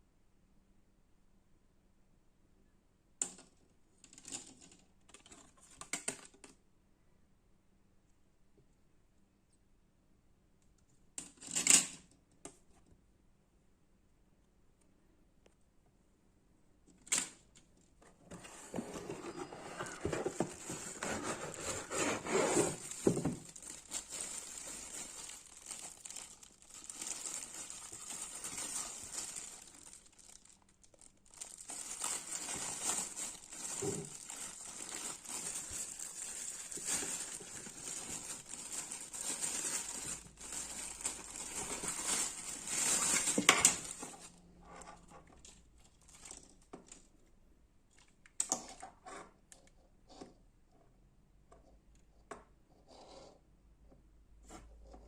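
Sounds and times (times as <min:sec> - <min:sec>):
packaging rustling and crinkling: 0:18.2 - 0:44.3, 0:45.4 - 0:47.0.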